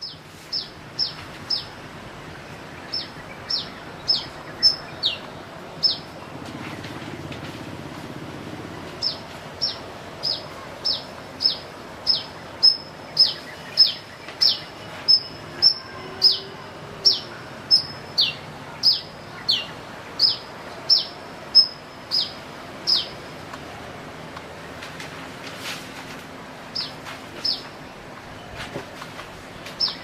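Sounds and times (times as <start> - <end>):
sunbird high piercing calls: 2.8 - 6.1, 9.0 - 23.2.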